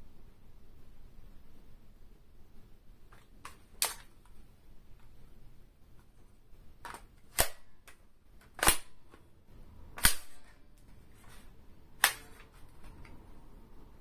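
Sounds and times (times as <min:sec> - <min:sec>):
airsoft gun mechanism clacks: 0:03.2 - 0:04.2, 0:06.8 - 0:09.2.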